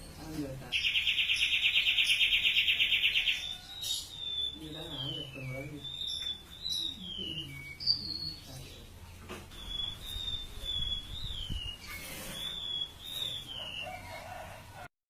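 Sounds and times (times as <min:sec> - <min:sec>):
songbird whistling high phrases: 0:09.5 - 0:14.1.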